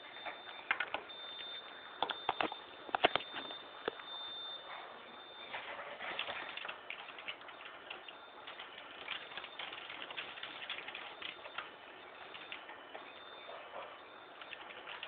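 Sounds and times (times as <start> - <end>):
irregular light clicks and ticks: 0.2 - 4.2.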